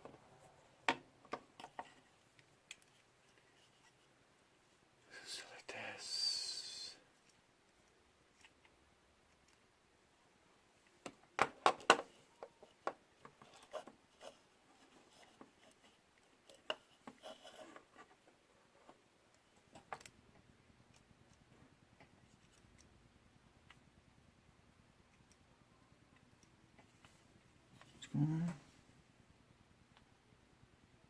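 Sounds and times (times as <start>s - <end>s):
faint low hum: 12.1s - 31.0s.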